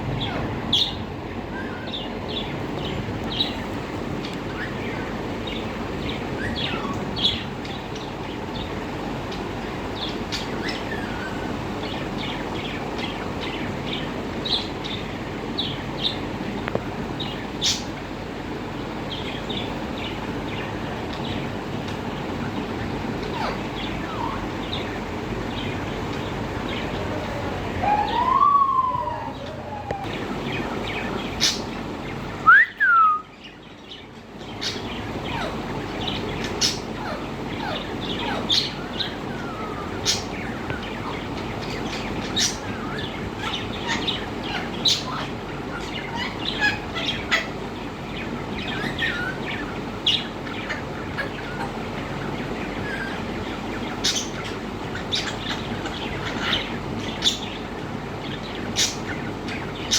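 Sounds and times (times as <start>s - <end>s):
parrot whistling: 27.8s - 30.1s, 32.4s - 33.3s.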